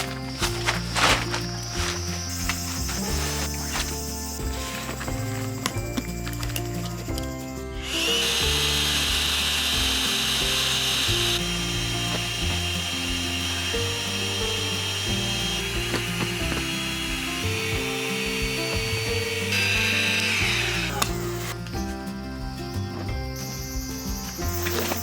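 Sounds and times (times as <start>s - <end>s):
background music with stepped notes: 0.0s - 25.0s
small electric motor whirring: 7.8s - 21.6s.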